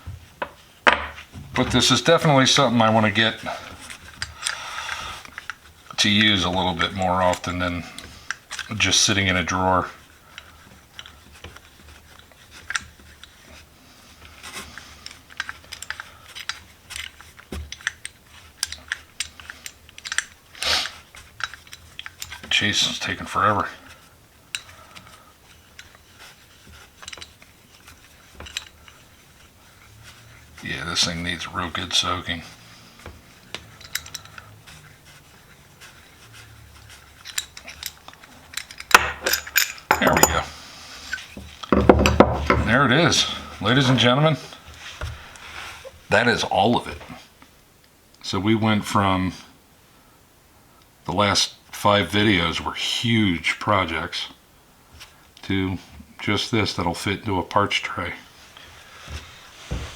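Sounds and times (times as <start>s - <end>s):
small metal parts clicking: 14.5s - 22.5s, 24.5s - 24.9s, 25.7s - 29.0s, 33.4s - 40.4s.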